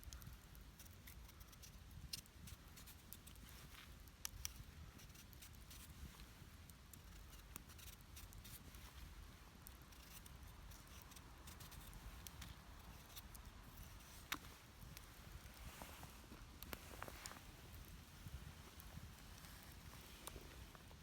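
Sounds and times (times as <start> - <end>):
faint small clicks: 0.0 - 5.9.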